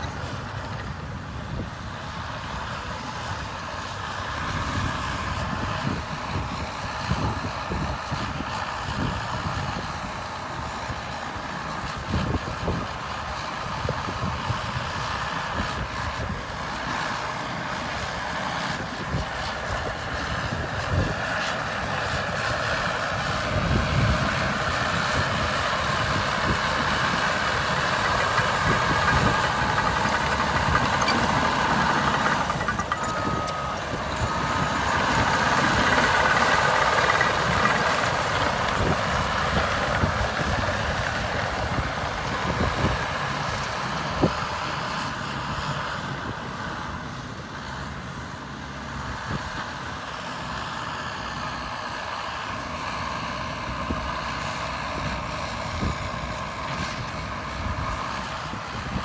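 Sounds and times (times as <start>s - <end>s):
bulldozer diesel engine under load: 0.0s - 59.0s.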